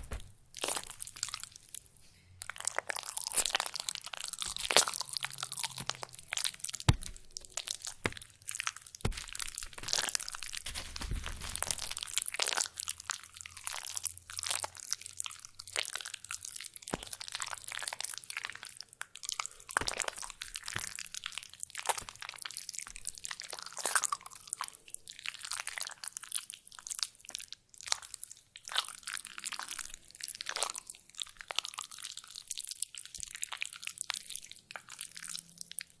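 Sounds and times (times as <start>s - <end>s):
banana squished by hand: 0.0s - 1.5s, 2.7s - 12.9s, 19.2s - 22.6s.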